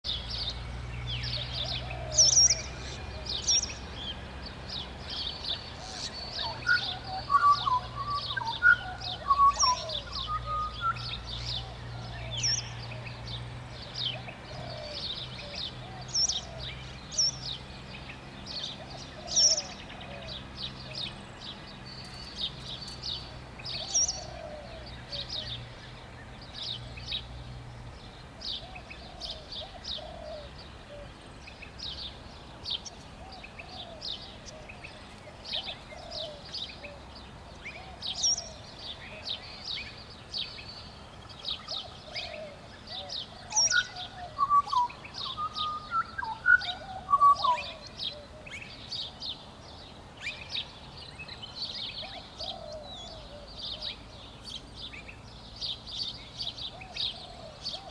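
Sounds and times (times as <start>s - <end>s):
birds chirping: 0.0s - 57.9s
bird singing whistled notes: 0.1s - 3.8s, 5.5s - 13.0s, 37.6s - 49.2s.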